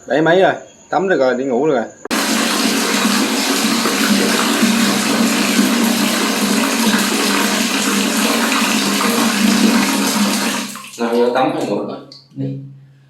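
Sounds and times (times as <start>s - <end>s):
tap water running into bath: 2.1s - 12.3s.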